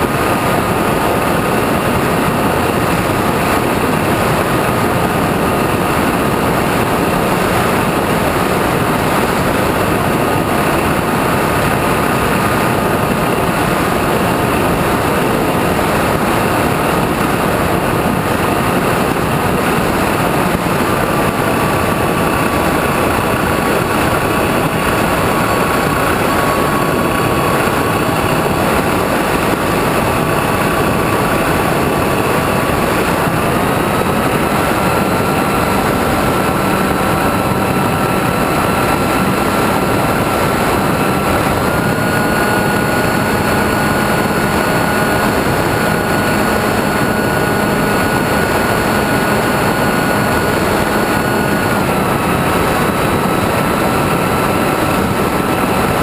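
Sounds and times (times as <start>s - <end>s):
electric motor whine: 0.0s - 56.0s
wind rush over microphone: 0.0s - 56.0s.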